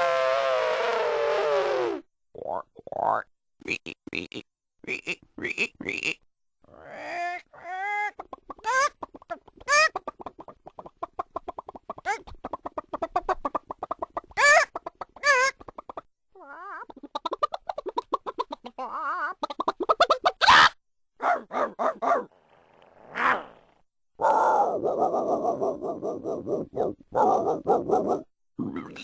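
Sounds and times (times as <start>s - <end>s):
chicken squawking: 6.8s - 20.8s
hens clucking: 8.2s - 16.0s, 16.8s - 18.8s.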